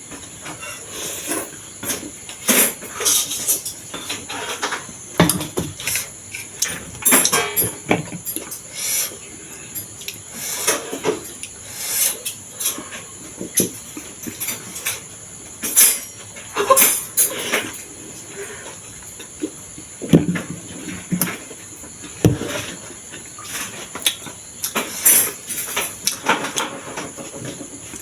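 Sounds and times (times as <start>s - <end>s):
utensils clicking on dishes: 5.8s - 9.1s.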